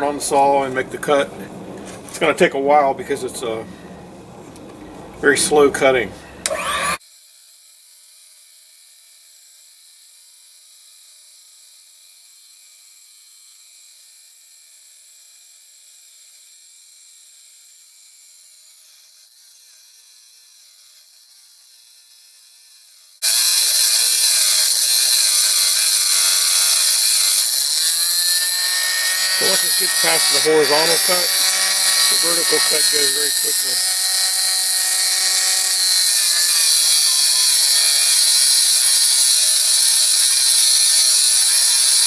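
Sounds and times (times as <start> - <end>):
saw grinding through metal: 5.3 - 7.0, 23.2 - 42.0.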